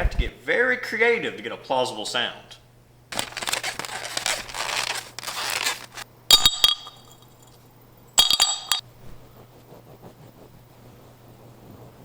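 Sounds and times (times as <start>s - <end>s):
rustling: 3.1s - 7.2s
glass clinking: 6.3s - 7.4s, 8.2s - 8.8s.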